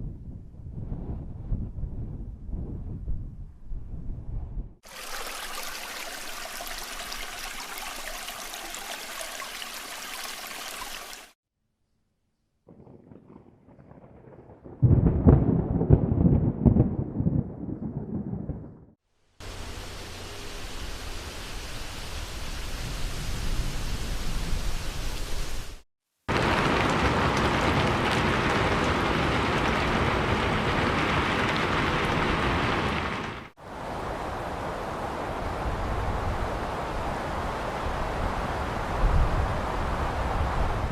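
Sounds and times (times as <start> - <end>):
heavy rain: 4.8 - 11.4, 19.4 - 40.9
stream water rushing: 4.8 - 11.4.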